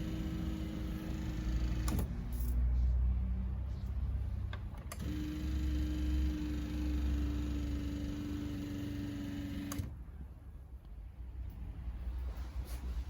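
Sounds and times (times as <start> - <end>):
electric seat motor humming: 0.0 - 2.0, 5.0 - 10.0.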